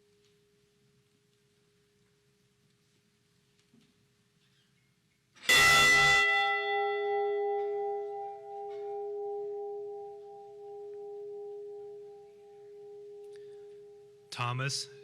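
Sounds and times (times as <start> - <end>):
large bell ringing: 5.5 - 14.4.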